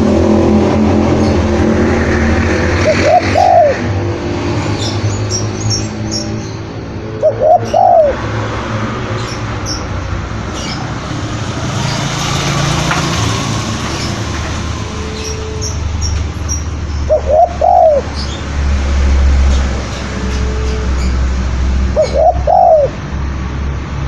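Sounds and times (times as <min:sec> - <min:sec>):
dove cooing: 0:02.8 - 0:03.9, 0:06.9 - 0:08.7, 0:17.0 - 0:18.3, 0:21.9 - 0:23.0
small birds chirping: 0:09.1 - 0:12.6.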